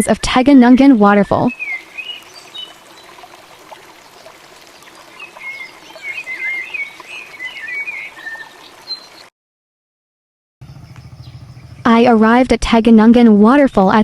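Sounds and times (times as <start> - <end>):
running water: 1.4 - 9.3
bird warbling: 1.5 - 3.3, 4.0 - 9.2, 10.6 - 12.0.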